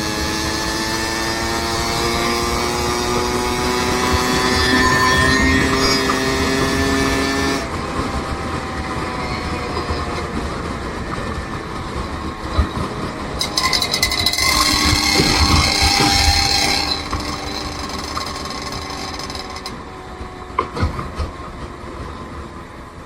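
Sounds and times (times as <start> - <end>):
rapidly clicking rattle: 13.4 - 19.8.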